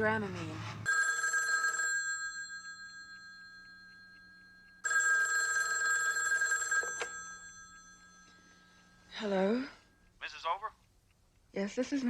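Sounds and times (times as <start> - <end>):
telephone bell ringing: 0.9 - 9.1.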